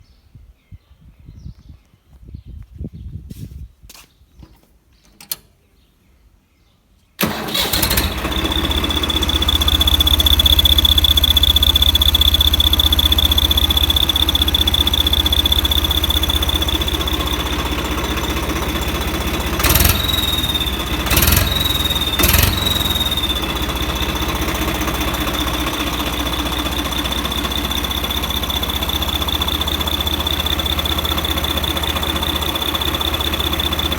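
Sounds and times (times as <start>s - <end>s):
turbocharged engine running: 7.2s - 33.9s.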